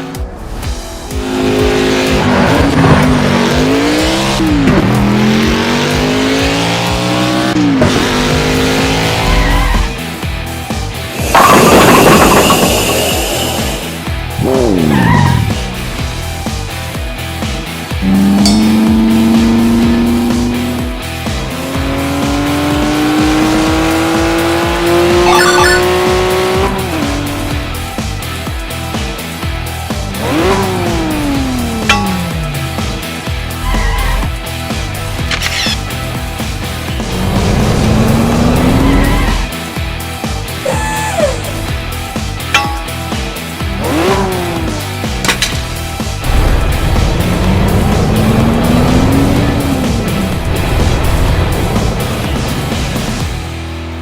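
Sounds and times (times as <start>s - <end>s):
race car engine revving high: 1.2s - 10.0s, 11.2s - 16.1s, 17.9s - 27.7s, 29.7s - 34.4s, 36.7s - 39.6s, 43.6s - 53.2s.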